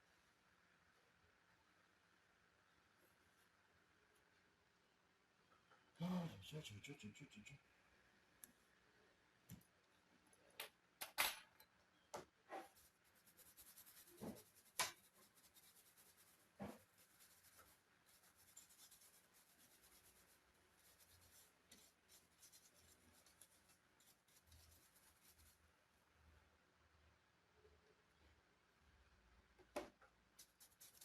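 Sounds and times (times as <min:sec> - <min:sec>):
light scratchy rubbing: 0:12.5 - 0:25.6, 0:30.4 - 0:31.0.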